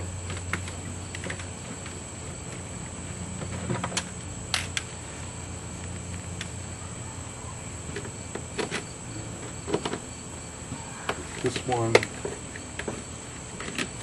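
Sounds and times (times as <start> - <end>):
crickets chirping: 0.0 - 14.0.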